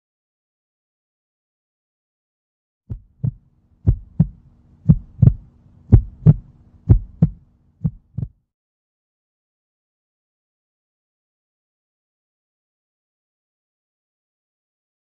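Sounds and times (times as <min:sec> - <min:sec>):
heartbeat thumps: 0:02.9 - 0:08.4.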